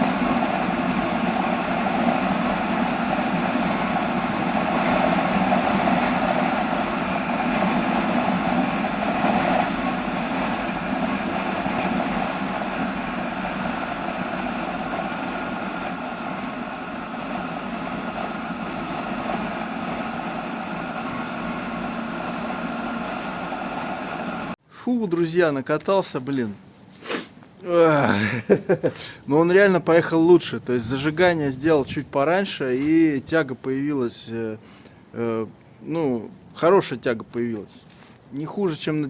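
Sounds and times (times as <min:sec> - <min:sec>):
motorcycle engine running: 0:00.0 - 0:24.6.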